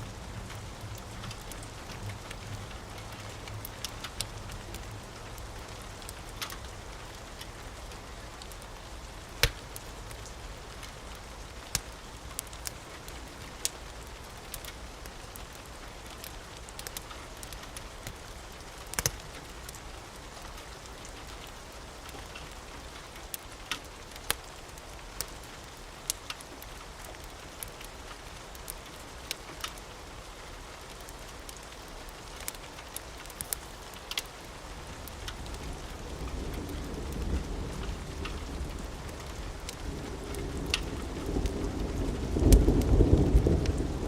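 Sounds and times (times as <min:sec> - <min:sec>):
steady rain hiss: 0:00.0 - 0:44.0
wood fire crackling and popping: 0:00.3 - 0:19.8, 0:20.4 - 0:29.9, 0:30.8 - 0:44.0
thunder rumbling: 0:35.4 - 0:44.0.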